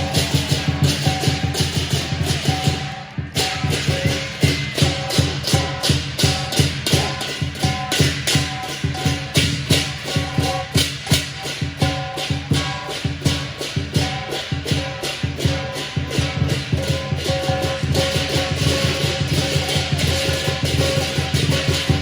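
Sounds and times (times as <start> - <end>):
cymbals clashing: 0.0 - 22.0
drum beating fast rhythm: 0.0 - 22.0.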